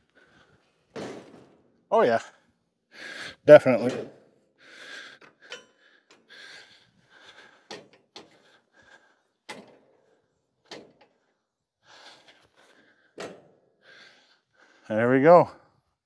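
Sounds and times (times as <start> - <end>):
light breathing: 0.0 - 0.9, 2.3 - 3.5, 4.5 - 14.9
faint knocks and creaks: 7.2 - 11.4.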